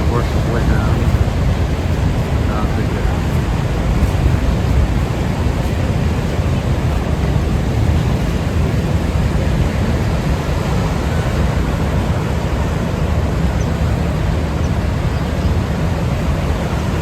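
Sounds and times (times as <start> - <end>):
river rapids rushing: 0.0 - 17.0.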